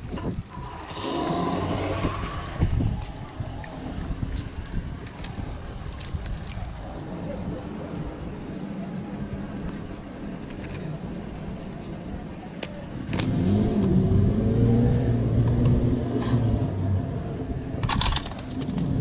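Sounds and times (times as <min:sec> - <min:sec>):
engine revving: 0:00.6 - 0:02.8, 0:13.1 - 0:17.7
clicking or clattering burst: 0:17.8 - 0:19.0.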